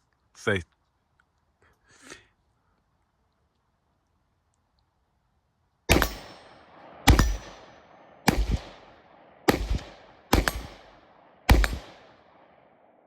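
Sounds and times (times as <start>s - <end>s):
rifle shots with echo: 5.9s - 13.0s.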